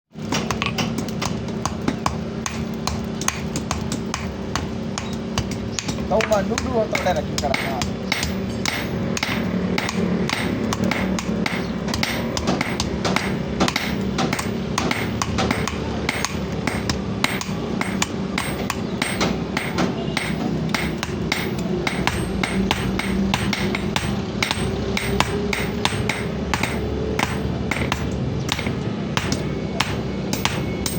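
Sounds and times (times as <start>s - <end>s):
steady background noise: 0.1s - 30.9s
hammer striking steel on anvil: 0.2s - 30.9s.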